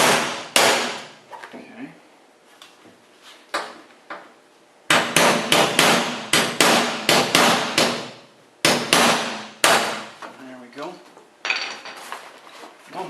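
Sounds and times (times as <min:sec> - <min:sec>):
hammer striking chisel: 0:04.9 - 0:10.0.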